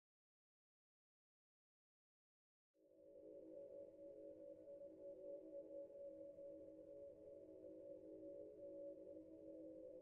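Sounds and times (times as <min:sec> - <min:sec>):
faint ambient drone: 0:02.8 - 0:10.0.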